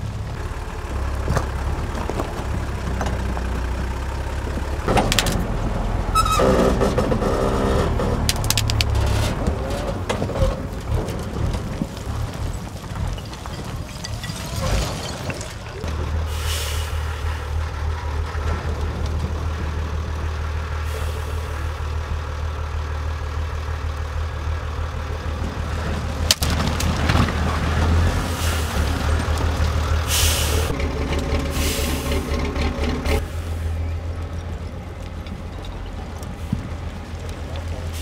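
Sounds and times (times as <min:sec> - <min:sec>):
diesel truck engine labouring: 0:00.0 - 0:38.0
air brake hisses: 0:16.3 - 0:17.3, 0:30.1 - 0:30.7, 0:31.5 - 0:32.2.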